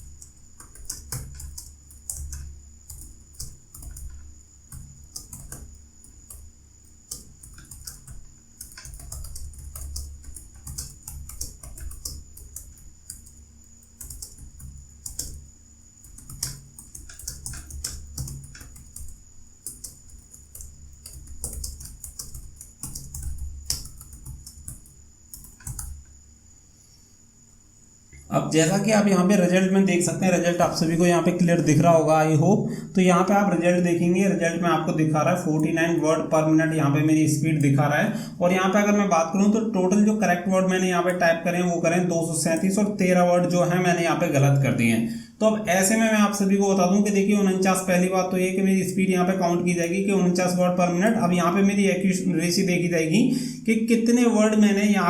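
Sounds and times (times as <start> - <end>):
fast typing on keyboard: 0.0 - 26.1, 45.5 - 52.8
faint high-pitched whine: 0.0 - 55.0.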